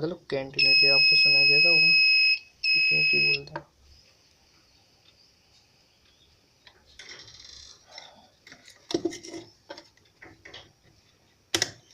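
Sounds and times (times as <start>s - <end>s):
multimeter continuity buzzer: 0.6s - 3.5s
sharp clicks and knocks: 8.5s - 11.9s.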